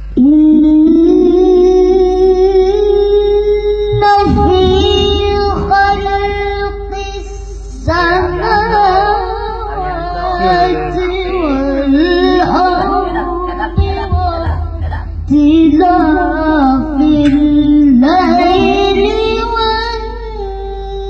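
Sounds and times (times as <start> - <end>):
young woman singing: 0.2 - 21.0.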